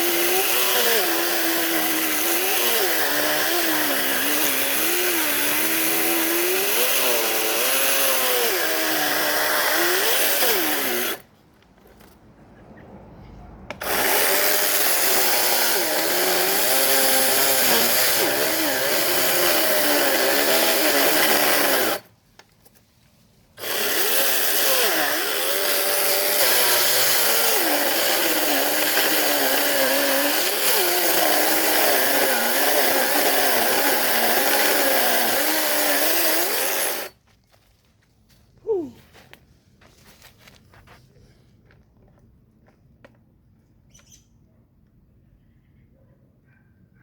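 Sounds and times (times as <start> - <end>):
power saw cutting branches: 0.0 - 11.3, 13.7 - 22.1, 23.6 - 37.2.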